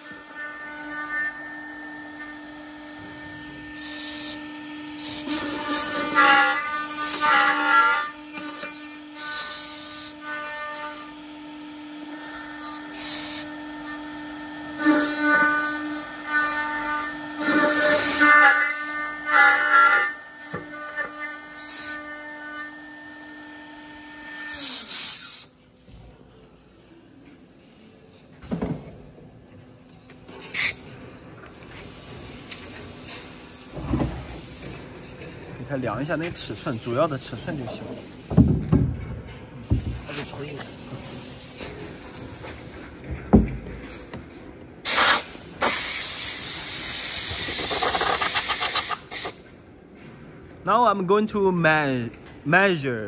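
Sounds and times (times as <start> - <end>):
drilling machine motor hum: 0.0 - 24.9
loud hiss: 3.8 - 4.4, 35.8 - 38.5, 44.8 - 49.4
short bursts of hiss: 24.6 - 25.5, 30.5 - 30.9, 44.8 - 49.5.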